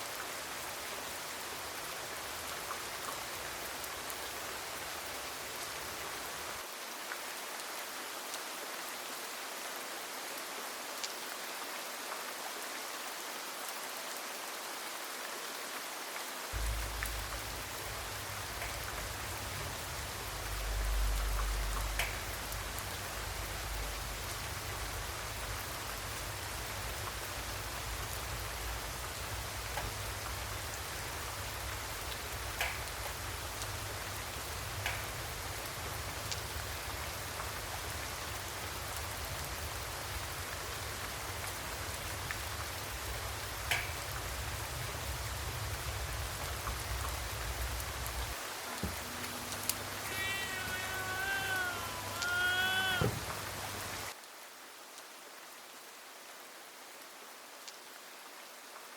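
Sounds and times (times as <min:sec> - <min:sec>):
rain falling: 0:00.0 - 0:58.9
low rumble: 0:16.6 - 0:19.6.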